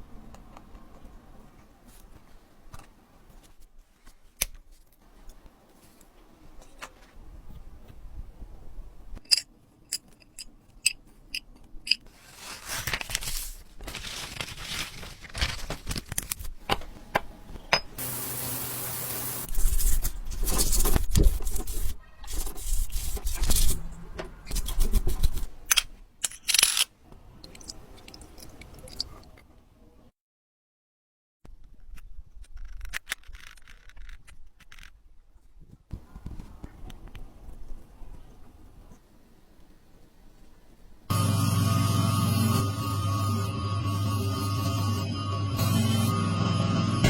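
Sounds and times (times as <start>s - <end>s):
small metal parts clicking: 9.2s - 12.1s, 25.7s - 29.1s, 32.4s - 35.0s
scraping and rubbing: 11.3s - 16.6s, 19.4s - 23.9s, 24.5s - 25.6s, 32.5s - 35.0s
steady hiss: 18.0s - 19.6s.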